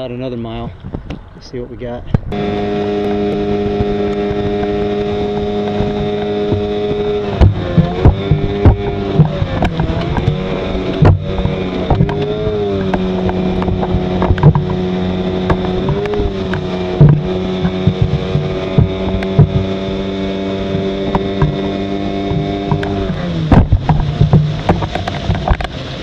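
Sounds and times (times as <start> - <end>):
outboard motor running: 2.3 - 26.0
short sharp knocks: 5.7 - 19.8, 21.1 - 21.6.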